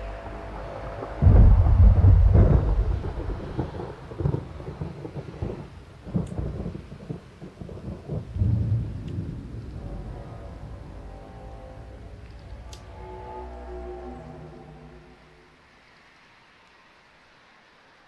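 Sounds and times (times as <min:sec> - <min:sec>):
thunder rumbling: 0:00.0 - 0:15.5.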